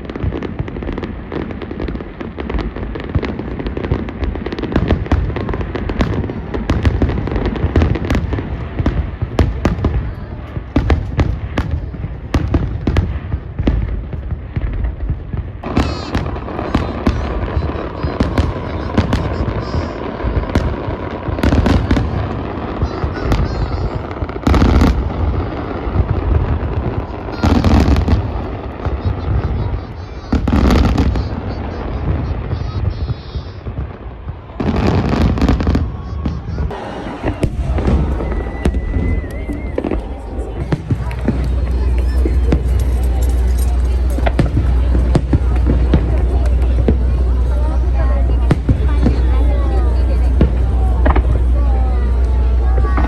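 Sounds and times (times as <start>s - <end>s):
fireworks bangs and crackles: 0.0s - 53.0s
low rumble: 35.3s - 53.0s.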